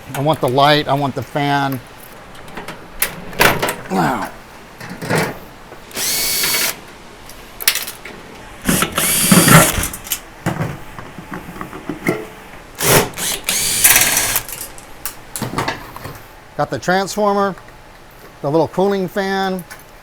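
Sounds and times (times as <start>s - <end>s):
power drill motor whine: 5.9s - 6.8s, 8.7s - 10.0s, 12.8s - 14.6s.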